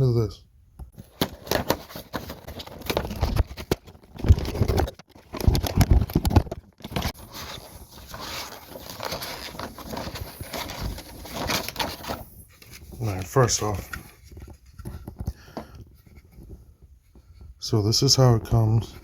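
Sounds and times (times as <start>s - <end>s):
packaging crinkling and rustling: 1.0s - 15.3s.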